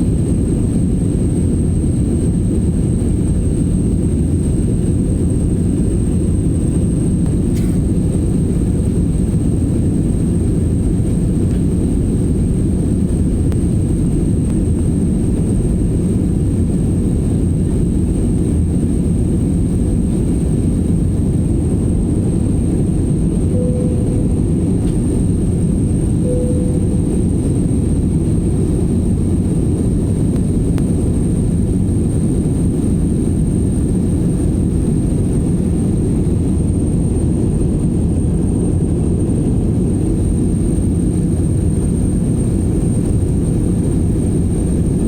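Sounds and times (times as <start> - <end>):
jet cabin noise: 0.0 - 36.5, 41.3 - 45.0
thin high whine: 23.5 - 28.2.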